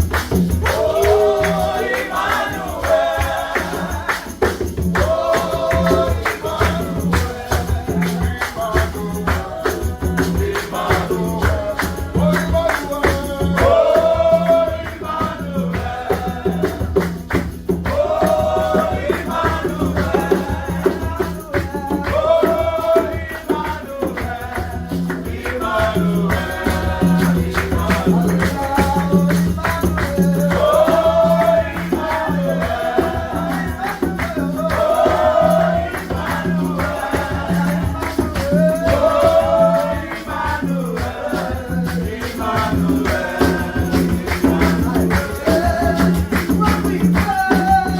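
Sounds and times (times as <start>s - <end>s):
rattling hand percussion: 0.0s - 47.9s
voices singing gospel: 0.0s - 47.9s.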